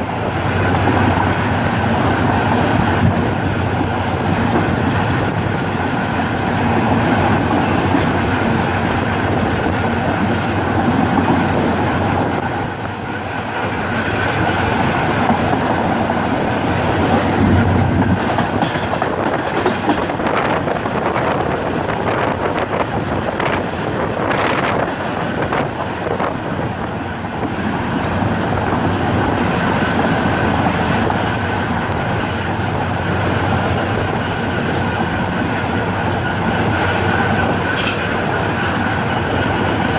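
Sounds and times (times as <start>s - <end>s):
train rumbling on track: 0.0s - 39.9s
wheels clicking over rail joints: 0.3s - 25.8s, 28.2s - 39.9s.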